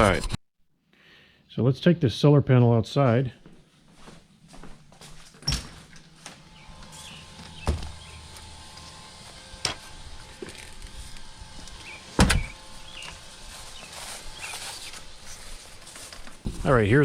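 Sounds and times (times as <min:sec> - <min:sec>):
handling noise: 0:05.3 - 0:17.0.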